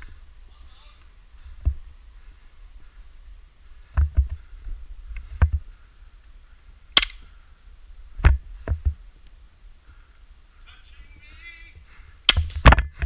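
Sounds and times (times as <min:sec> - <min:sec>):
airsoft pistols firing: 0:07.0 - 0:07.2
sharp bright crack: 0:07.0 - 0:07.3, 0:12.3 - 0:12.8.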